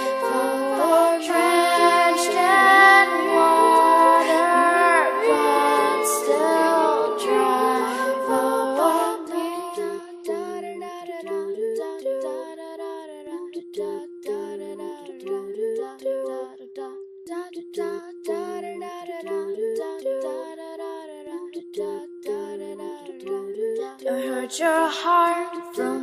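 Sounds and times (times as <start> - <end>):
female voices singing harmonies: 0.0 - 26.0.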